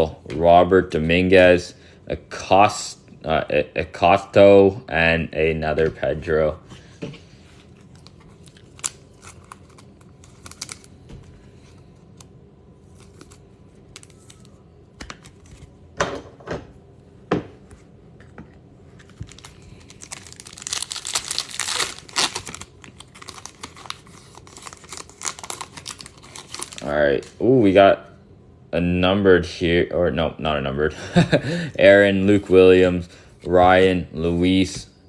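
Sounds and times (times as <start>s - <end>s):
card pack wrappers crinkling: 7.6s - 14.6s, 19.0s - 27.3s.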